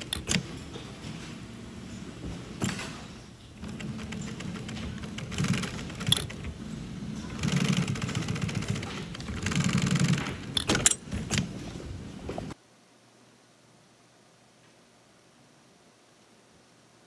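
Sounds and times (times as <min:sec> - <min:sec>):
sewing machine stitching: 0:00.0 - 0:11.8.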